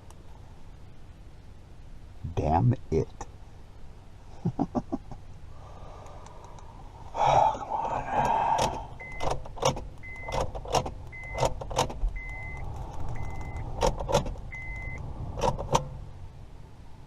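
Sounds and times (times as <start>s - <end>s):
car electronic chime beeping: 9.0s - 9.3s, 10.0s - 10.5s, 11.1s - 11.5s, 12.2s - 13.6s, 14.5s - 15.0s.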